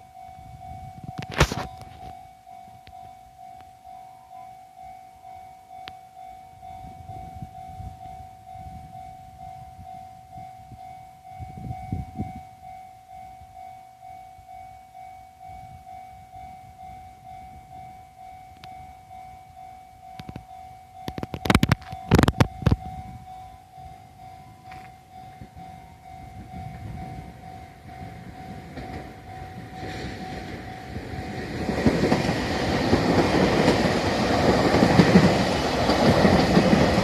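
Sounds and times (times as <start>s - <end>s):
level crossing alarm ringing: 0.0s - 37.0s
freight train clatter: 24.6s - 37.0s.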